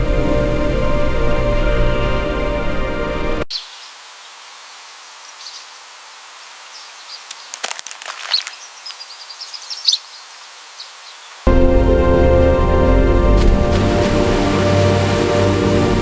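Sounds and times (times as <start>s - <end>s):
music: 0.0s - 3.5s, 11.5s - 16.0s
small birds chirping: 3.5s - 11.5s
steady background hiss: 3.5s - 11.5s.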